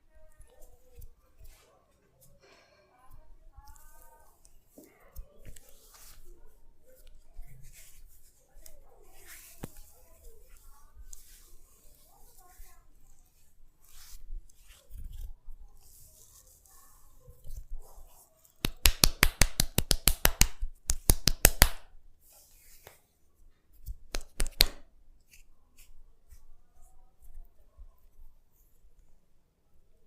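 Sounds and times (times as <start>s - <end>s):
hands rustling on hair: 3.1s - 23.1s
hands snapping clicks: 18.6s - 21.8s, 23.8s - 24.8s.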